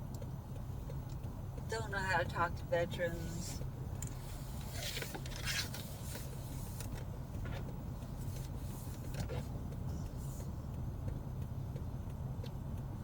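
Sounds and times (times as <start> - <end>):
car engine and road hum: 0.0 - 13.0
soft hisses: 3.1 - 7.0, 8.0 - 10.6.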